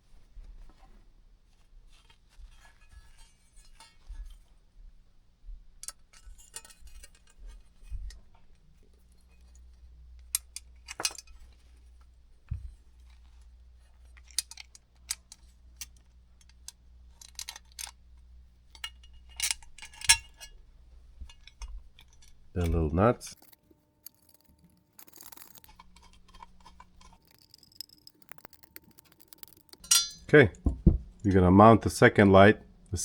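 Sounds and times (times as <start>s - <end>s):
metal screws clinking: 18.7s - 20.6s, 21.2s - 30.3s.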